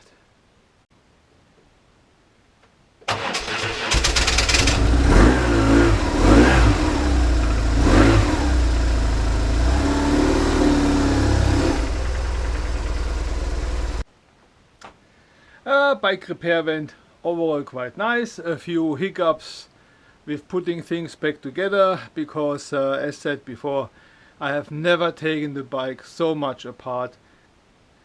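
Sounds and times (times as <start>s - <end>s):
electric starter cranking: 3.1s - 5.4s
motorcycle engine revving and idling: 3.9s - 14.0s.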